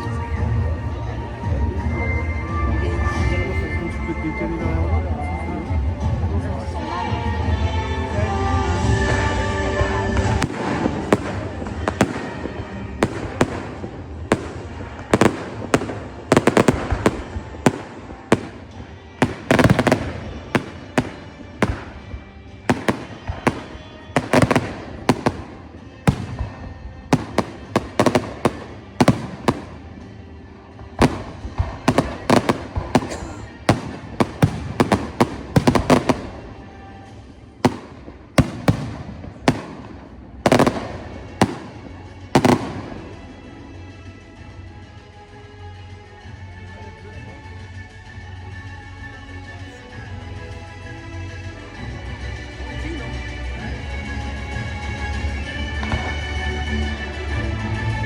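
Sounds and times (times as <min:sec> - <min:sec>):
fireworks bangs and crackling: 0:05.6 - 0:43.7, 0:54.6 - 0:58.0.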